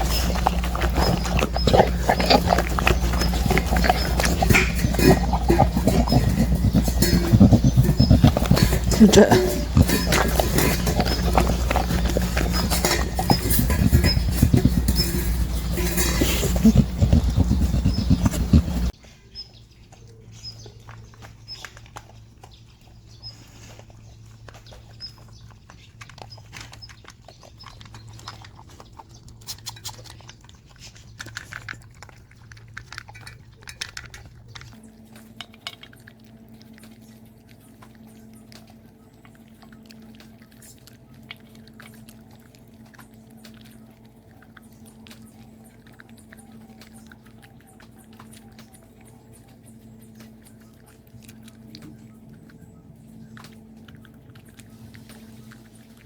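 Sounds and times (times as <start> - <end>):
dog chewing and crunching food: 0.0 - 56.0.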